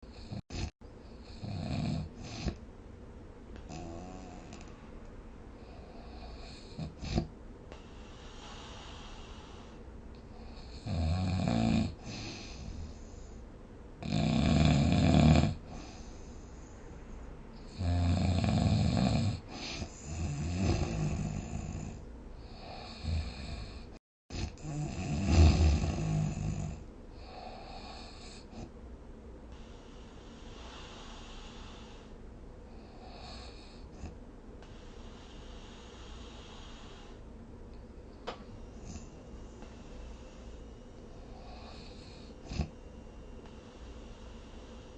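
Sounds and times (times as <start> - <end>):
quiet breathing: 0.0 - 14.2, 14.9 - 44.9
person snoring: 0.1 - 2.6, 3.7 - 4.7, 5.6 - 13.0, 14.0 - 16.1, 17.7 - 28.7, 29.6 - 37.2, 38.7 - 44.9
hissing breaths: 5.5 - 10.8, 29.5 - 37.4, 38.4 - 44.9.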